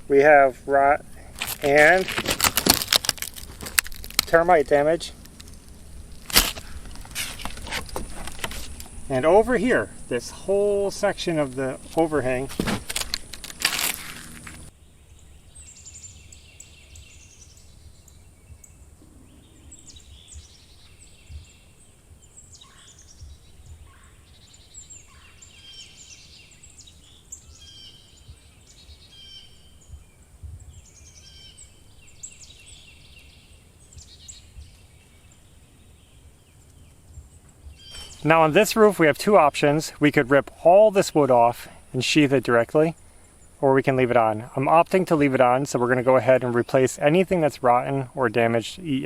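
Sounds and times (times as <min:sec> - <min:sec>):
small birds chirping: 0:00.0 - 0:49.0
rustling noise: 0:01.0 - 0:09.0, 0:11.0 - 0:14.7.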